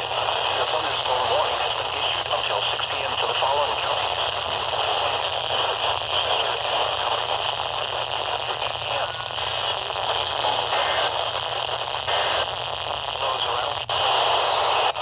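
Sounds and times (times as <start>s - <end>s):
radio static hiss: 0.0s - 15.0s.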